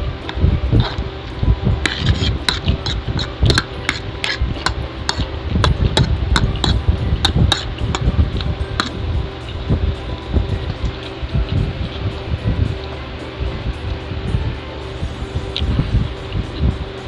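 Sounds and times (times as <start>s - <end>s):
faint steady hum: 0.0s - 17.0s
utensils clicking against dish: 1.8s - 9.6s.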